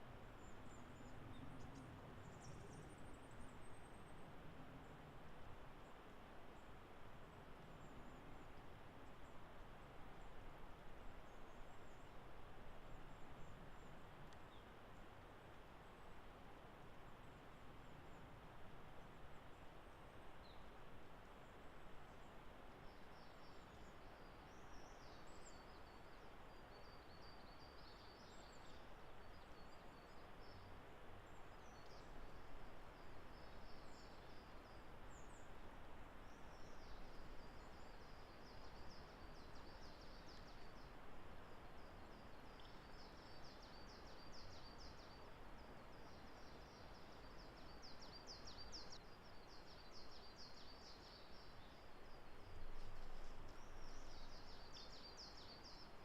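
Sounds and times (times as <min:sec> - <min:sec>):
steady background hiss: 0:00.0 - 0:56.0.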